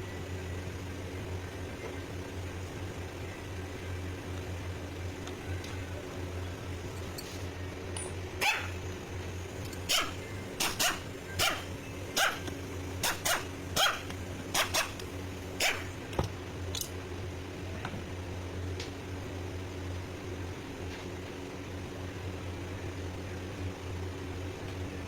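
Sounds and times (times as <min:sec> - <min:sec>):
steady low hum: 0:00.0 - 0:25.0
dog barking: 0:08.4 - 0:08.8, 0:09.9 - 0:14.9, 0:15.6 - 0:15.9.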